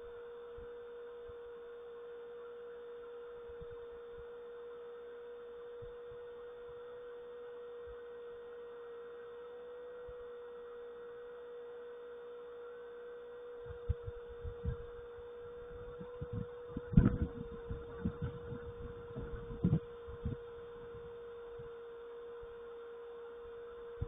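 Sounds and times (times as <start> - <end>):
steady hum: 0.0 - 24.0
low thumps: 15.8 - 20.4.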